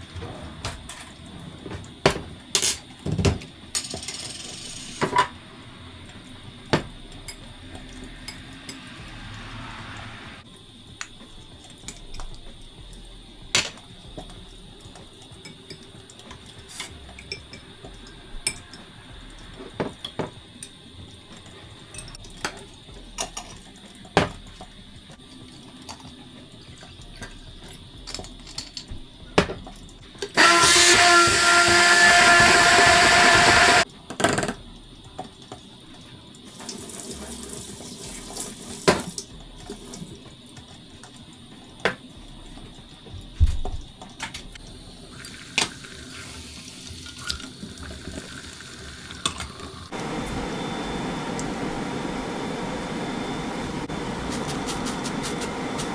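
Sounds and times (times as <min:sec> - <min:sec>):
running water: 0:34.6 - 0:55.9.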